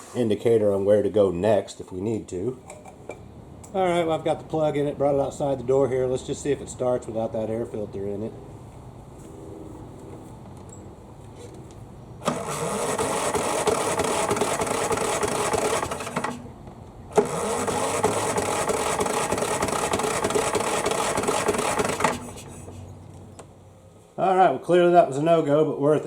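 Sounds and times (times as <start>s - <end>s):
mower engine cranking: 12.2s - 16.5s, 17.1s - 23.4s.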